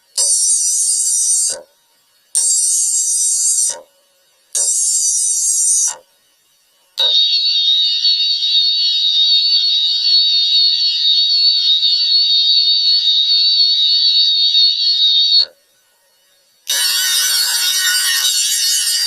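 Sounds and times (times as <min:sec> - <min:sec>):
high-pitched electronic alarm tone: 0:00.2 - 0:01.7, 0:02.4 - 0:03.8, 0:04.6 - 0:06.0, 0:07.0 - 0:15.6.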